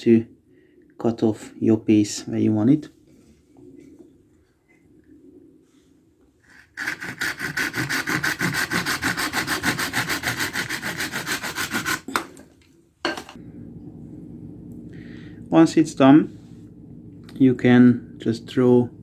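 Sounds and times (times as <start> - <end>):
knife sawing through branch: 6.5 - 12.1.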